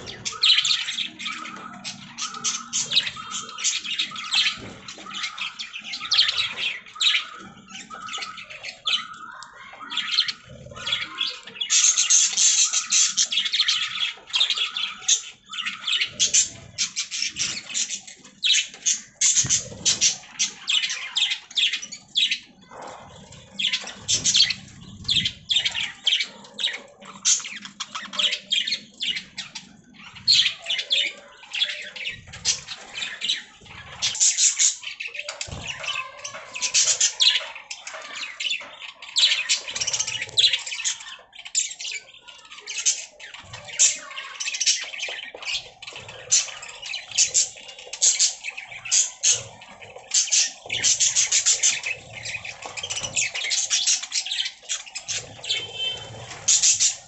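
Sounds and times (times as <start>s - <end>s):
budgerigars chirping: 0.0s - 57.0s.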